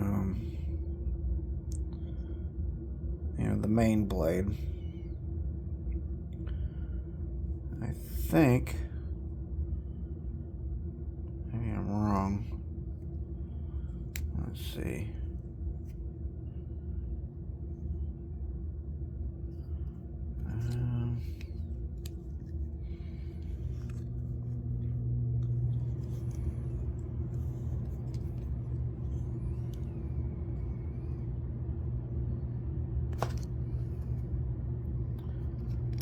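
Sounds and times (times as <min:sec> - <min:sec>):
low rumble: 0:08.7 - 0:36.0.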